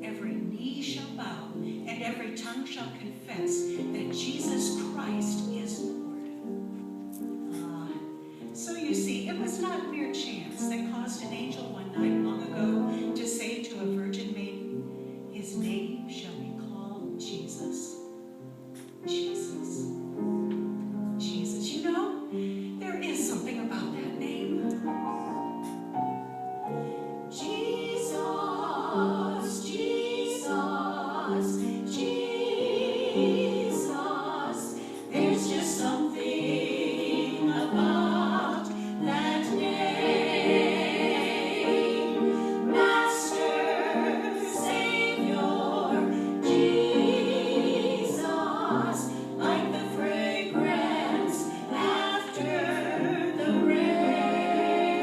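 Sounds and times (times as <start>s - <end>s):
choir singing held chords: 24.0s - 55.0s.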